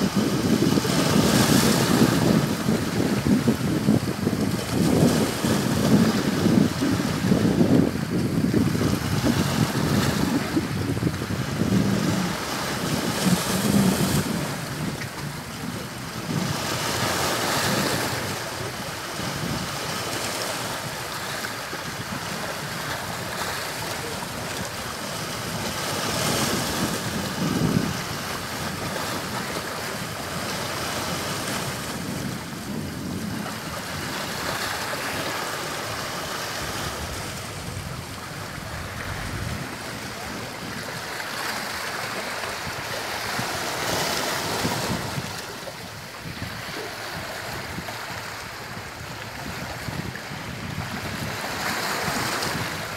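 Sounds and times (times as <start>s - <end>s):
sea waves washing onto shore: 0.0s - 52.9s
wind rumble on microphone: 0.0s - 52.9s.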